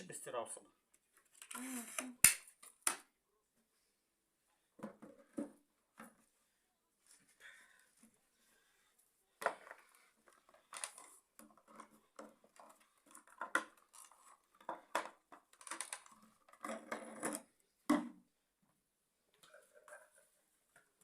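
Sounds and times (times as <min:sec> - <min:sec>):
plastic and metal parts clattering: 0:09.4 - 0:17.5.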